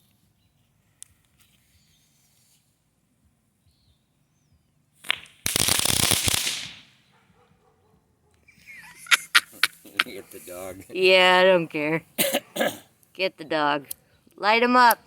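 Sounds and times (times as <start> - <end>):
firework pop and crackling: 5.0 - 7.0.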